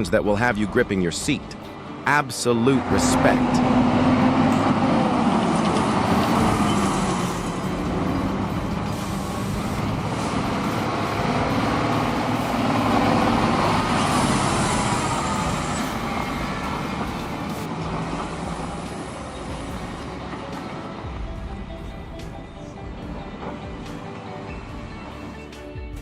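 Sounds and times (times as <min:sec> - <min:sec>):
truck diesel engine under load: 0:00.0 - 0:25.9.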